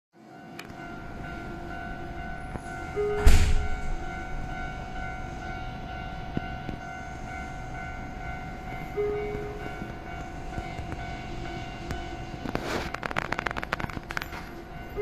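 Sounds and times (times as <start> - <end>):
train electrical hum: 0.2 - 15.0
sudden loud burst: 3.2 - 3.8.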